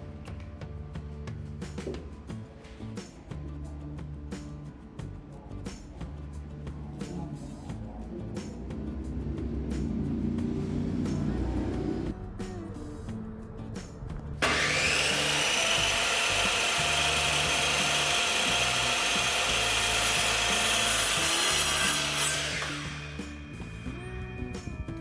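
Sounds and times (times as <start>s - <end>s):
power tool cutting wood: 14.4s - 23.9s.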